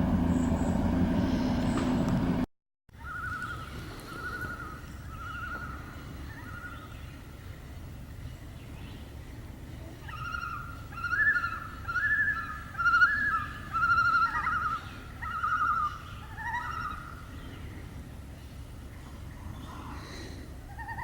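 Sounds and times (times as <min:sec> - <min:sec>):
loon tremolo call: 0:03.0 - 0:06.9, 0:10.0 - 0:17.4, 0:20.7 - 0:21.0.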